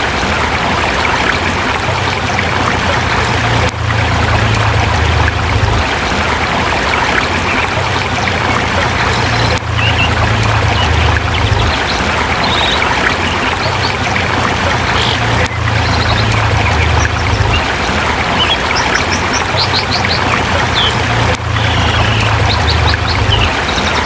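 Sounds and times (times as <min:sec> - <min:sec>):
low hum: 0:00.0 - 0:24.0
river rushing over rocks: 0:00.0 - 0:24.0.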